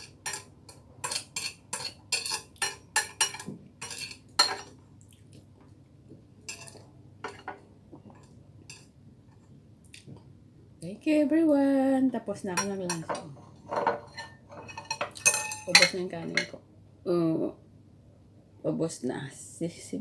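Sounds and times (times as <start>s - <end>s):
cutlery scraping a plate: 0.0s - 4.7s, 6.5s - 8.9s, 12.6s - 16.6s.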